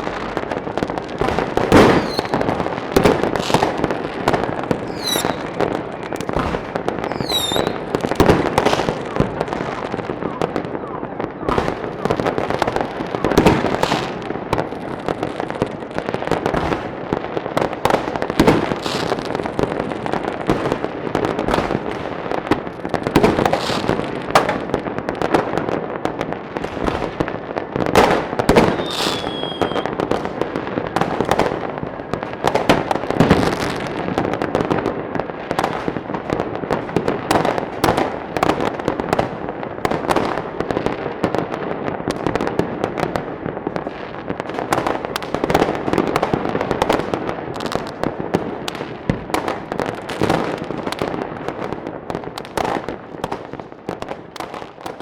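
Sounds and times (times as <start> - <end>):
fireworks bangs and crackles: 0.0 - 55.0
falling whistle: 2.0 - 2.4, 4.9 - 5.5, 7.1 - 7.8, 28.7 - 29.9.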